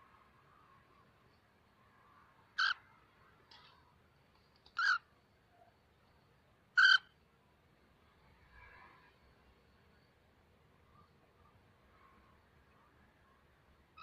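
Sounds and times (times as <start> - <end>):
cockatiel harsh calls: 2.6 - 2.8, 4.8 - 5.1, 6.8 - 7.2.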